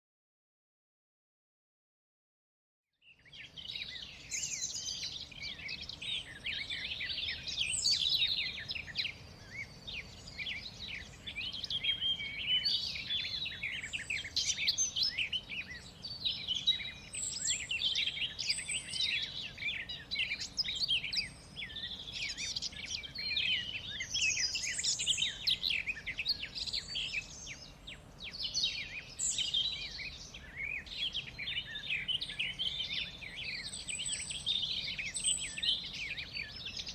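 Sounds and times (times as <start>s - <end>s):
small birds chirping: 3.0s - 36.9s
faint steady hiss: 3.2s - 36.9s.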